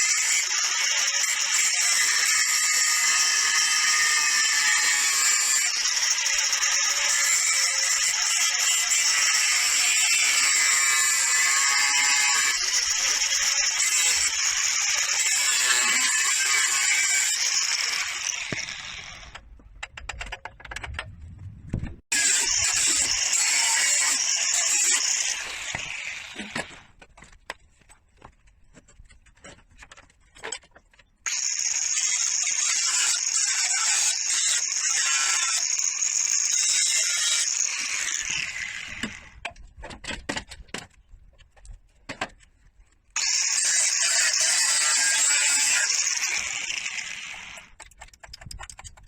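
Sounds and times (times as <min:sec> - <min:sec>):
power tool running: 0:00.0 - 0:19.4, 0:22.1 - 0:26.8, 0:31.3 - 0:39.3, 0:43.2 - 0:47.7.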